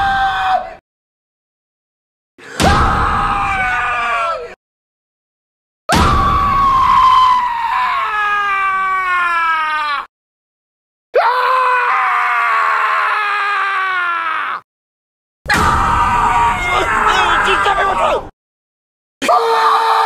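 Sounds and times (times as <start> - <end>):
person screaming: 6.7 - 10.1, 11.2 - 14.6, 15.8 - 18.2, 19.2 - 20.0.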